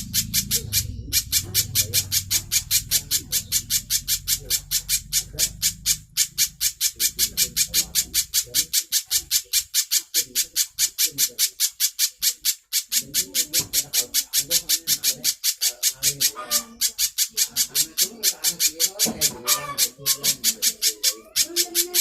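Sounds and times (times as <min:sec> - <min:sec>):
bird calling in sharp high chips: 0:00.0 - 0:22.0.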